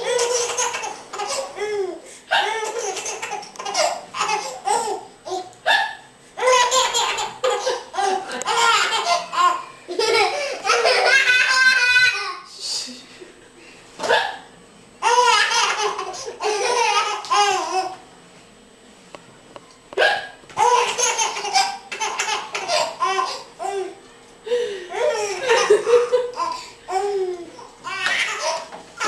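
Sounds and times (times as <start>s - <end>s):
baby laughing: 0.0s - 5.5s, 6.4s - 12.4s, 15.0s - 18.0s, 20.0s - 24.0s, 24.9s - 29.0s
woman hiccuping: 20.0s - 20.4s.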